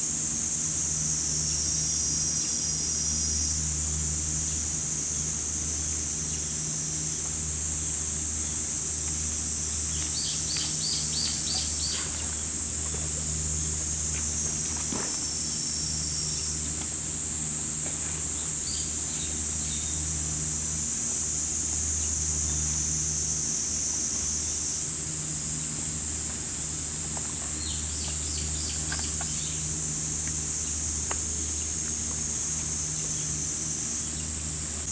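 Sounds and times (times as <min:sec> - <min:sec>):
cicadas shrilling: 0:00.0 - 0:34.9
low steady hum: 0:00.0 - 0:34.9.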